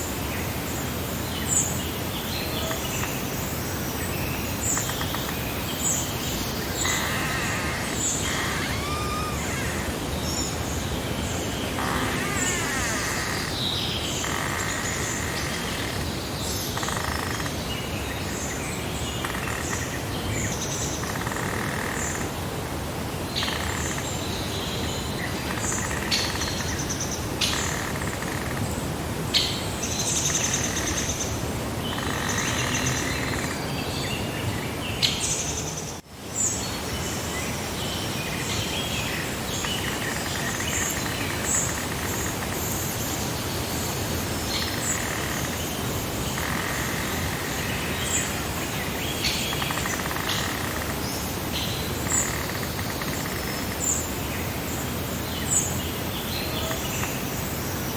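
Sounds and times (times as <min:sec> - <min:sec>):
outdoor ambience hiss: 0:00.0 - 0:57.9
birds chirping and calling: 0:04.6 - 0:17.6.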